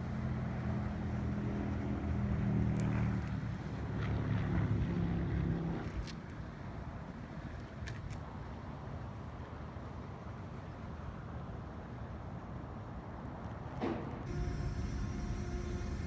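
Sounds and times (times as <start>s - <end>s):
factory machinery humming: 14.0s - 16.0s.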